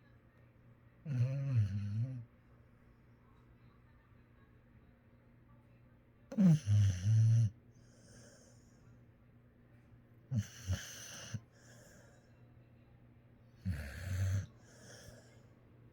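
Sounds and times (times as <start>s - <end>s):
dog snoring: 1.0s - 2.3s, 6.3s - 8.7s, 10.3s - 12.2s, 13.6s - 15.4s.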